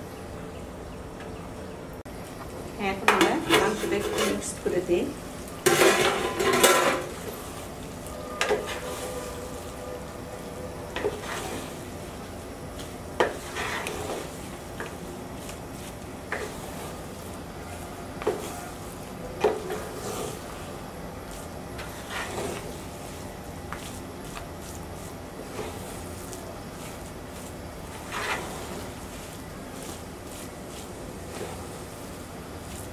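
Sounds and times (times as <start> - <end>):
spoon scraping in cooking pot: 3.1 - 4.6, 8.4 - 9.0, 13.2 - 15.0, 21.8 - 22.8, 24.7 - 31.7.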